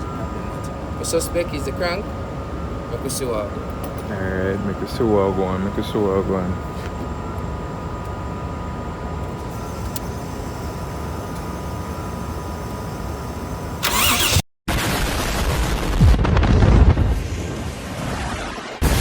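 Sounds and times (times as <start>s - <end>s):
car engine starting and revving: 13.8s - 14.4s.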